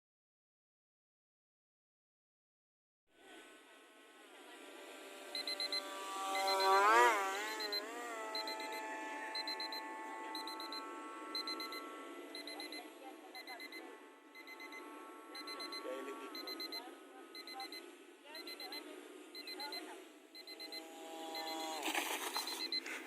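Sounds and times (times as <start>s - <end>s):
electric motor whining: 4.8s - 16.8s, 20.4s - 22.8s
high electronic beeps: 5.4s - 17.8s, 18.4s - 18.8s, 19.4s - 21.8s, 22.4s - 22.9s.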